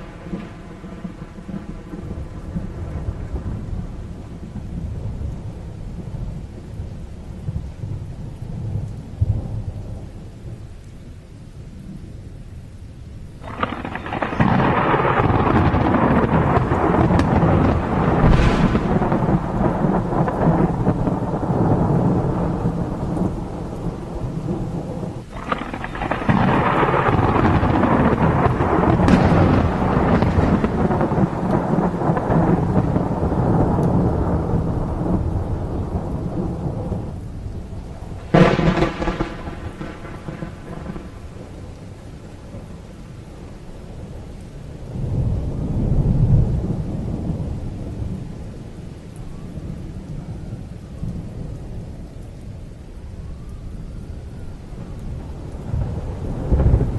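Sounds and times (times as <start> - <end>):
thunder rolling: 0.0 - 6.4, 13.4 - 44.3, 53.1 - 56.9
steady rain: 0.0 - 56.9
sharp thunder crack: 13.4 - 23.4, 25.3 - 37.0, 38.2 - 41.6.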